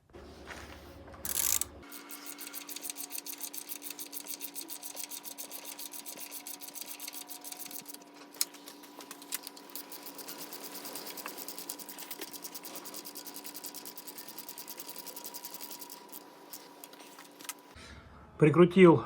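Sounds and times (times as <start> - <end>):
ratchet wrench clicking: 1.3 - 8.5, 9.1 - 17.6.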